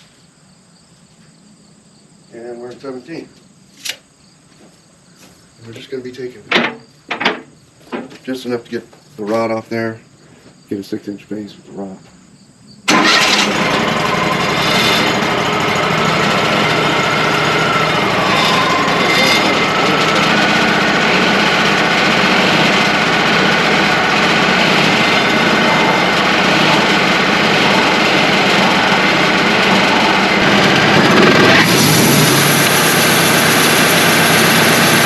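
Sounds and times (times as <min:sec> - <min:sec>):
band sawmill sawing a log: 0:12.9 - 0:35.0.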